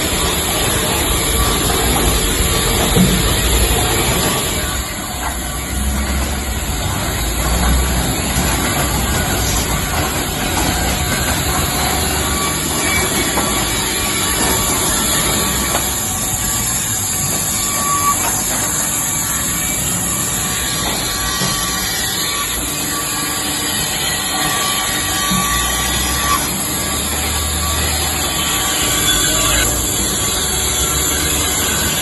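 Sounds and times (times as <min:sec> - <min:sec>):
band saws running: 0:00.0 - 0:32.0.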